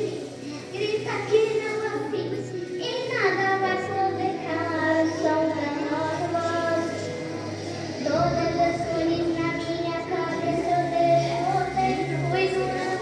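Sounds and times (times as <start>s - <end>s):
karaoke backing track: 0.0s - 13.0s.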